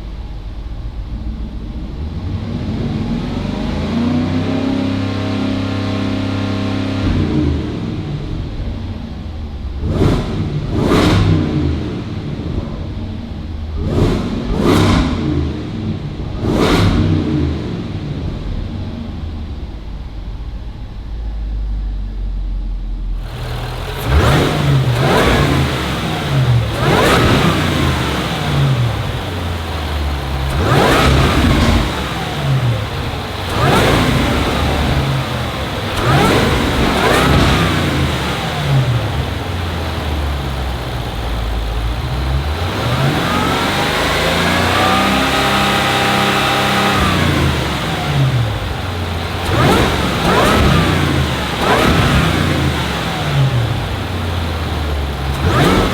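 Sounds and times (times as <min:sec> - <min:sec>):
engine idling and revving: 0:00.0 - 0:55.9.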